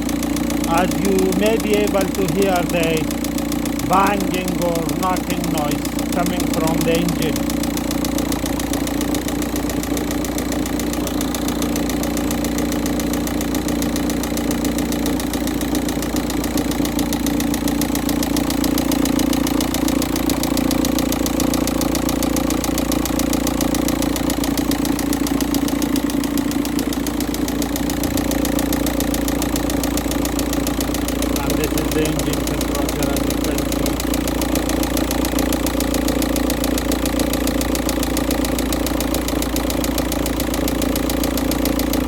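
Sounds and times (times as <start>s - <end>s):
diesel engine idling: 0.0s - 42.0s
engine knocking: 0.0s - 42.0s.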